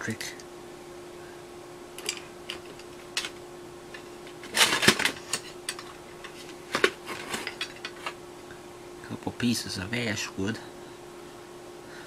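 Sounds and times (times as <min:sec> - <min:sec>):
steady hum: 0:00.0 - 0:12.0
hard objects clicking and knocking: 0:04.3 - 0:08.2.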